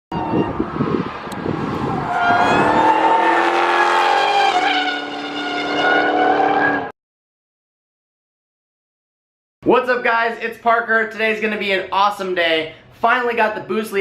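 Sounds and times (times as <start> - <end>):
car engine accelerating: 0.2 - 6.9.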